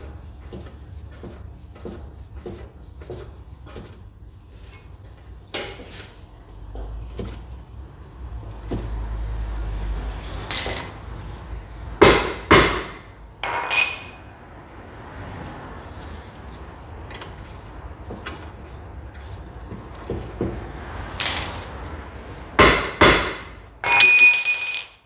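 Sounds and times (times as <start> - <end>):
loud sharp knocks: 12.0 - 13.1, 22.6 - 23.6
metal tools clanking on car parts: 12.0 - 14.4, 22.6 - 25.0
ringing metallic clink: 13.4 - 14.3, 23.8 - 25.0.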